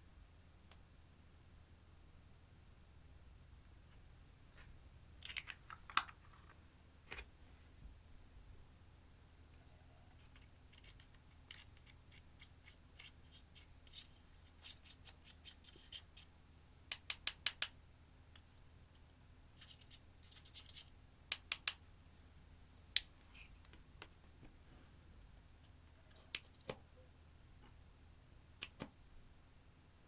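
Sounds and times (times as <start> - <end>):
snipping and scratching clicks: 10.2 - 16.3, 19.6 - 21.8, 26.1 - 26.8, 28.3 - 29.0.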